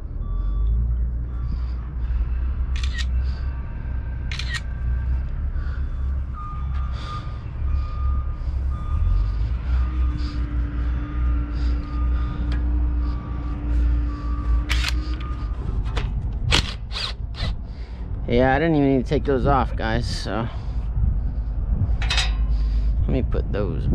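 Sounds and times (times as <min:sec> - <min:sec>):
reversing alarm beeping: 0:00.0 - 0:16.2
steady low rumble: 0:00.0 - 0:23.9
camera shutter clicks: 0:02.8 - 0:03.1, 0:04.3 - 0:04.7, 0:14.7 - 0:15.2.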